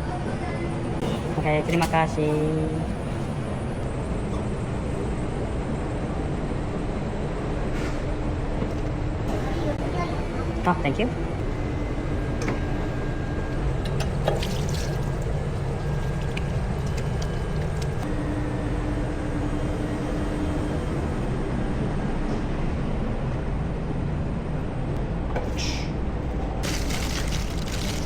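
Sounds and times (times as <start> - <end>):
restaurant background rumble: 26.5 - 28.0.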